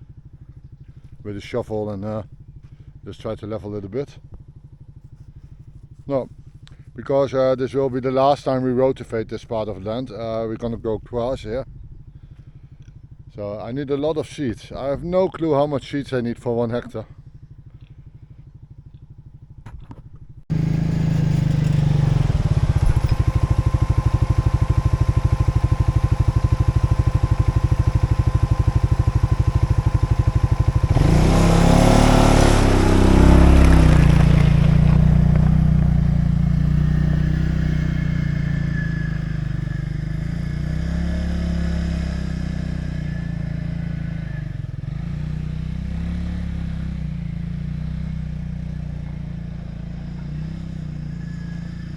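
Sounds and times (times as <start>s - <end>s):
small engine running: 17.1s - 51.9s.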